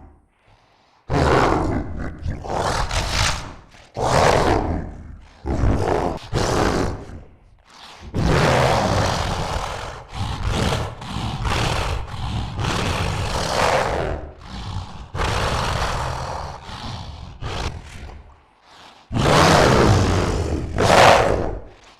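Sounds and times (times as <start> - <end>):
monster roars and hisses: 1.1 - 21.9.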